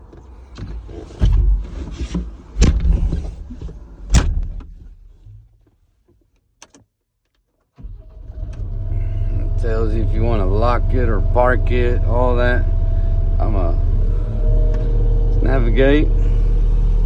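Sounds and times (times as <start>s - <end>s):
knocks and clunks: 0.0s - 5.5s
low machine hum: 8.5s - 17.0s
low rumble: 8.6s - 17.0s.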